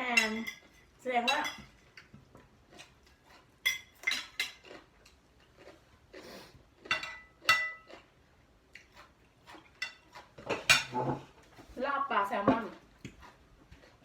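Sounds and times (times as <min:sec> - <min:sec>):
cutlery clinking on plates: 0:00.1 - 0:02.1, 0:03.6 - 0:04.7, 0:06.9 - 0:07.9, 0:09.7 - 0:11.3.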